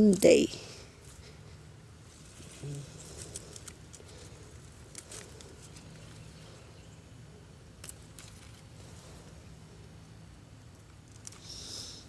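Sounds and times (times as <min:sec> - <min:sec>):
faint clicks and crackles: 0:02.3 - 0:06.5, 0:10.7 - 0:11.5.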